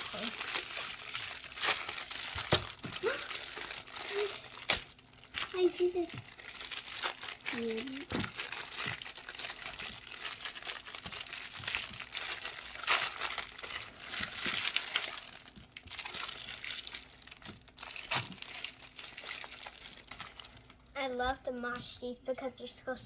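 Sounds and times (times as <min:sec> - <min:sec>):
plastic wrapper crinkling and tearing: 0:00.0 - 0:21.6.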